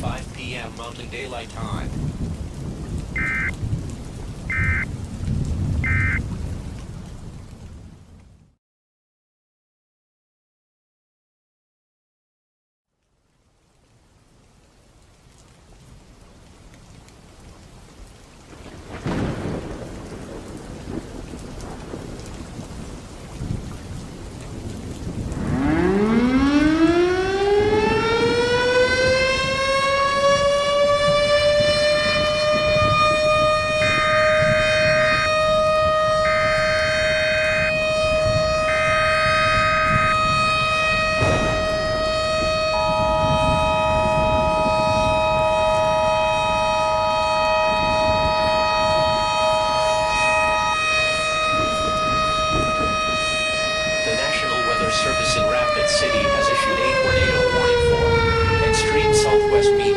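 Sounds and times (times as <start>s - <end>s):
tornado siren winding up: 3.0s - 3.6s, 4.5s - 4.9s, 5.8s - 6.3s, 25.4s - 59.9s.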